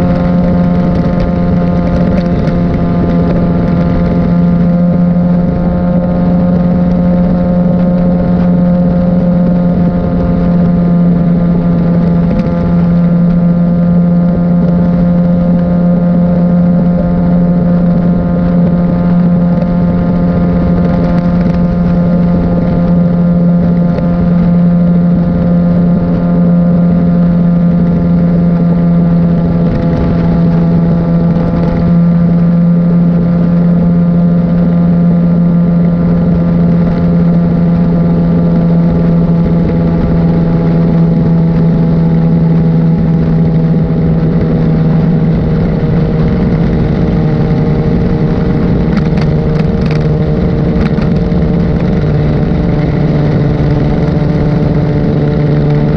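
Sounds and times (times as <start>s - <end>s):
motorcycle engine cruising: 0.0s - 55.9s.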